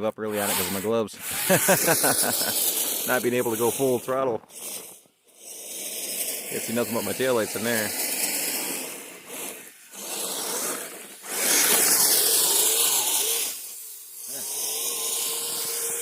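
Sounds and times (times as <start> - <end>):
tracks churning through snow: 0.3 - 5.0, 5.7 - 13.6
electric motors whining: 0.3 - 16.0
loud hissing burst: 0.3 - 16.0.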